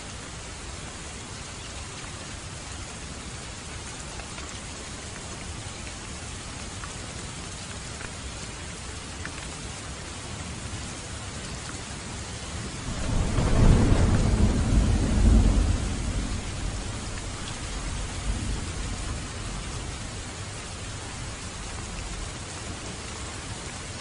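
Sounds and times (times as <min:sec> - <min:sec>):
steady rain falling: 0:00.0 - 0:24.0
thunder rumbling: 0:12.8 - 0:22.3.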